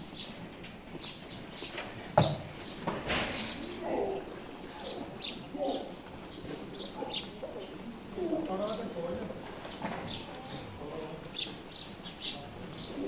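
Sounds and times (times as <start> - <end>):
birds chirping: 0.0 - 13.0
low cooing calls: 2.7 - 8.9.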